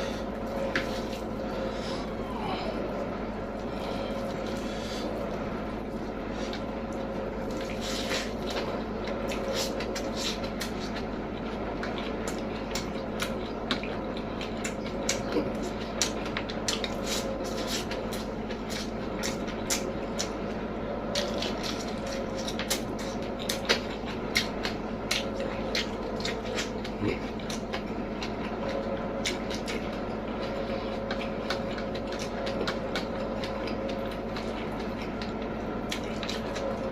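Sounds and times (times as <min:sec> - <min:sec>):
chewing with wet clicks: 0:04.2 - 0:36.9.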